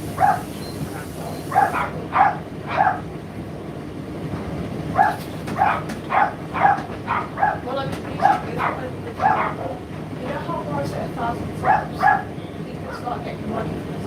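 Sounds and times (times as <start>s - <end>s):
dog barking: 0.1s - 3.1s, 4.9s - 9.8s, 11.6s - 12.4s.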